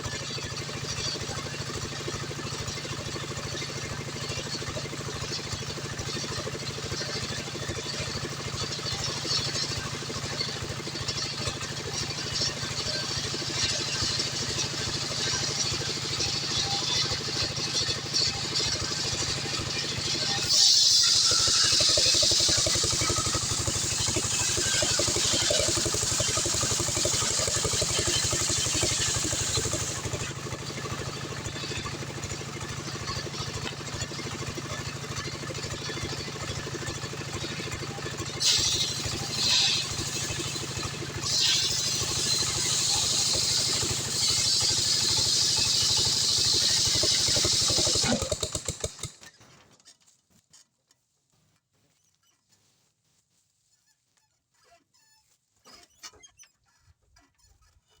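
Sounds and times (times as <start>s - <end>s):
chainsaw engine winding down: 0.0s - 49.4s
chainsaw cutting wood: 0.0s - 49.6s.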